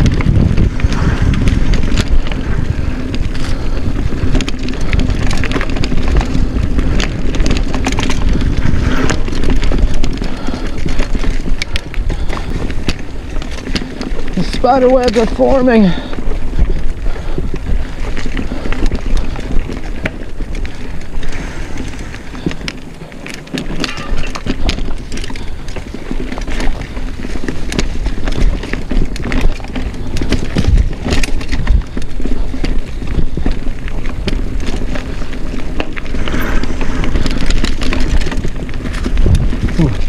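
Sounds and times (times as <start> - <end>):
mountain bike rattling over rocks: 0.0 - 40.0
low rumble: 20.6 - 23.0.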